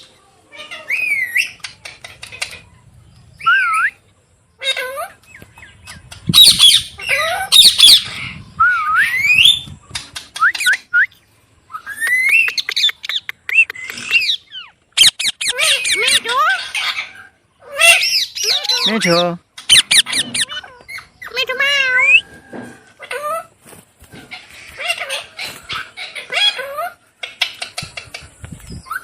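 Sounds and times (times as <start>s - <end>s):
parrot squawking and whistling: 3.4s - 4.0s, 6.3s - 9.7s, 11.7s - 22.2s.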